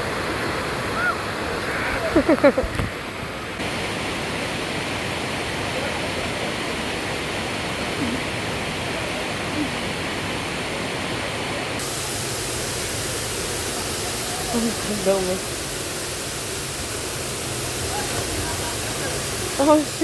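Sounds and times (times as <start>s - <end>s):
waterfall rushing: 0.0s - 20.0s
faint voices: 17.7s - 20.0s.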